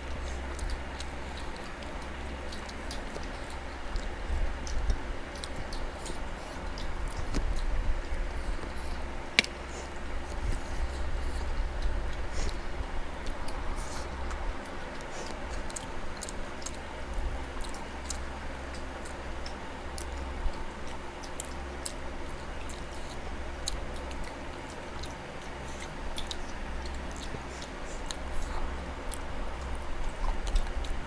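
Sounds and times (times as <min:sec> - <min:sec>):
wet mouth clicks: 0:00.0 - 0:16.9
chewing food: 0:00.0 - 0:31.0.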